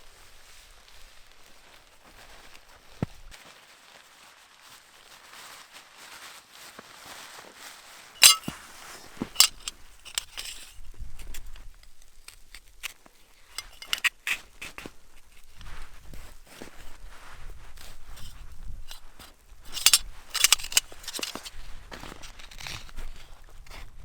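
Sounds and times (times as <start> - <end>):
sharp clinks and knocks: 8.2 - 8.6, 9.3 - 10.8, 13.5 - 14.4, 19.7 - 21.5.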